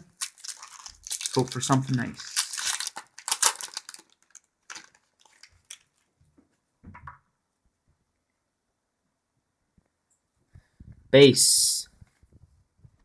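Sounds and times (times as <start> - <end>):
card pack wrapper crinkling and tearing: 0.0 - 6.1.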